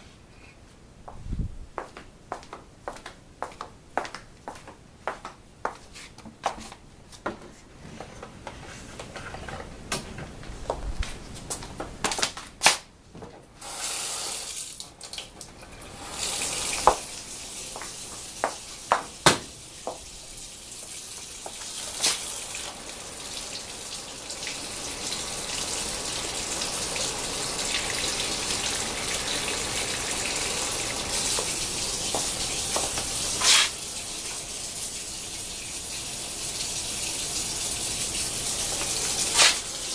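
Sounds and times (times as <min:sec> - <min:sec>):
water tap running: 0:13.6 - 0:39.9.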